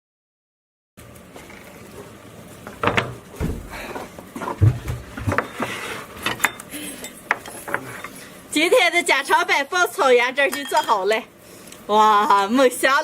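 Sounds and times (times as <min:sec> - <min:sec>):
tableware knocking and clinking: 0:02.7 - 0:03.8, 0:04.6 - 0:08.2
dull thumps: 0:02.7 - 0:05.5.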